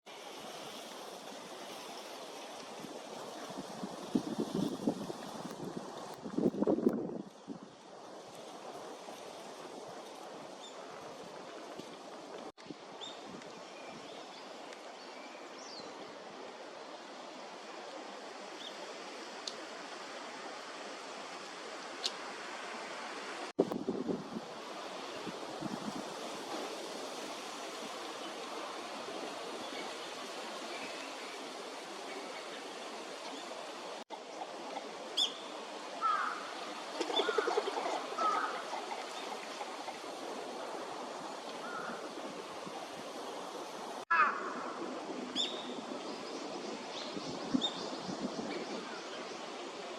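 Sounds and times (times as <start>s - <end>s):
rushing water: 0.0s - 49.9s
steady background hiss: 24.3s - 49.9s.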